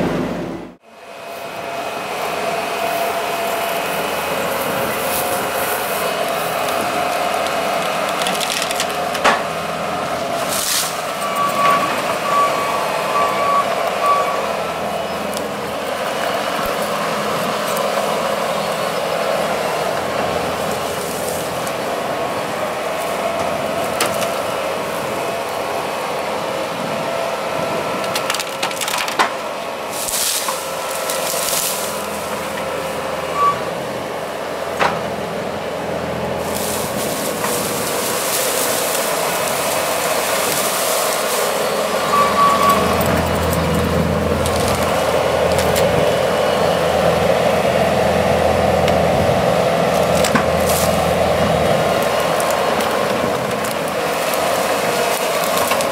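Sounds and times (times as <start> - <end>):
heavy machinery running: 0.0 - 55.9
wood cracking and splintering: 6.2 - 9.6, 28.0 - 32.7, 36.4 - 46.0, 49.8 - 55.9
backup alarm beeps: 11.2 - 14.4.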